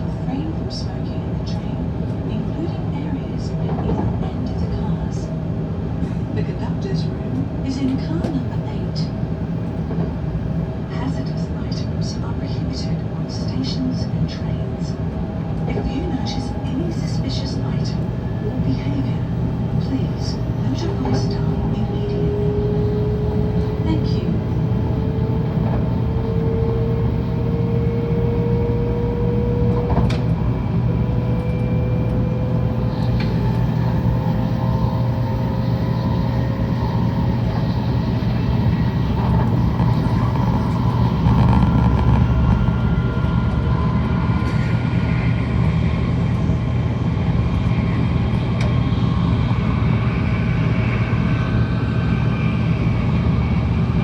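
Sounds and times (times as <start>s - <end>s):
train rumbling: 0.0s - 54.0s
thin motor whine: 29.0s - 45.8s.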